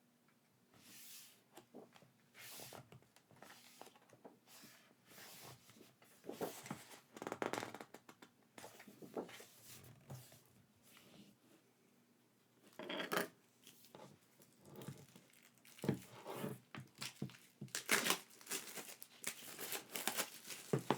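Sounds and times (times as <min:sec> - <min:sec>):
packaging rustling and scraping: 0:14.8 - 0:20.9.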